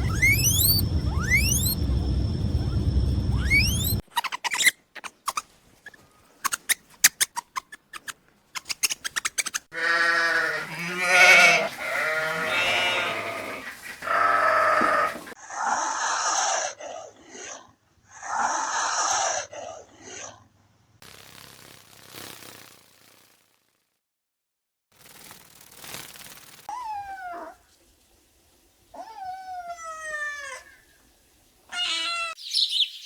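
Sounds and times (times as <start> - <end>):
hissing bursts: 0.0 - 4.0
bleat-like animal calls: 9.7 - 15.4.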